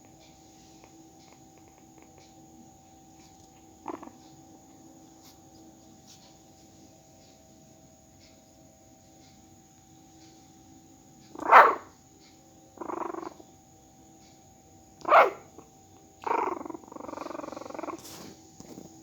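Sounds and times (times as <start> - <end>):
puppy whining: 0.8 - 4.6, 11.4 - 11.9, 12.8 - 13.4, 15.0 - 18.2
puppy yipping: 11.4 - 11.9, 15.0 - 15.5.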